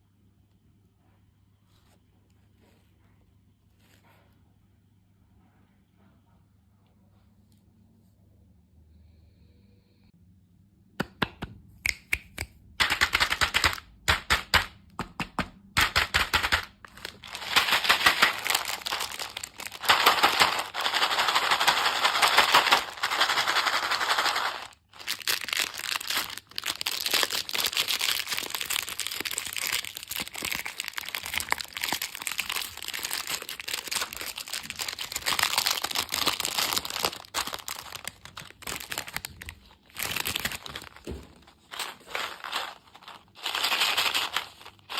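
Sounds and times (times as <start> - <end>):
crunching of sweets being eaten: 15.8 - 44.9.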